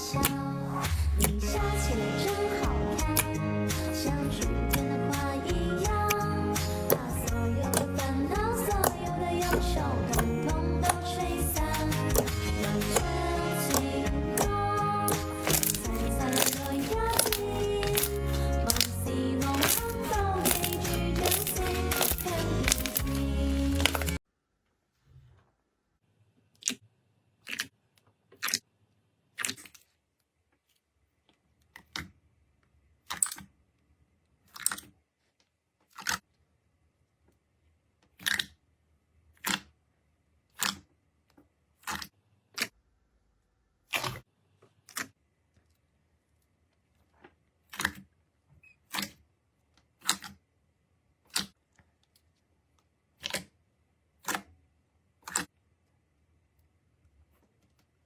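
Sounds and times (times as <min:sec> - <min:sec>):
slime clicking pops: 0:15.1 - 0:18.9, 0:19.5 - 0:23.1.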